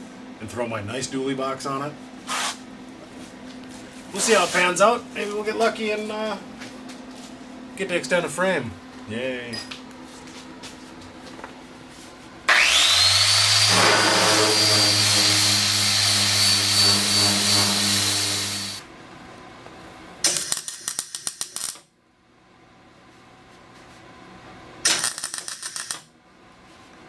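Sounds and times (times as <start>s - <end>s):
angle grinder cutting metal: 12.5s - 18.8s.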